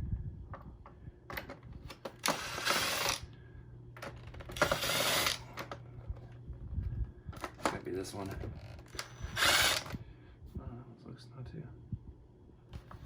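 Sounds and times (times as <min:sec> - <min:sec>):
screwdriver clicking and rattling: 0:01.3 - 0:03.2, 0:04.0 - 0:05.8, 0:08.9 - 0:10.0.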